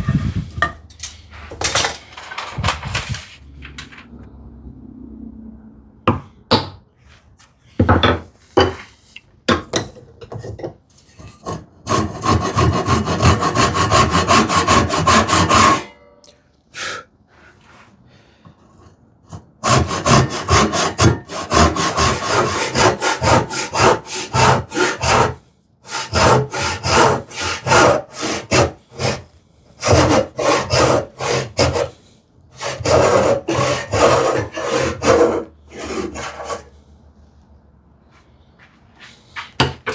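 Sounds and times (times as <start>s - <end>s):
hand saw cutting wood: 11.4s - 16.0s, 19.3s - 32.0s, 32.6s - 36.7s.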